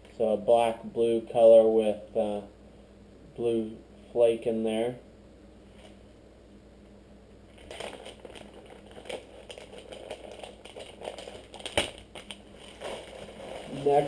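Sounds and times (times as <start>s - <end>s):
plastic package crinkling: 7.5s - 14.0s.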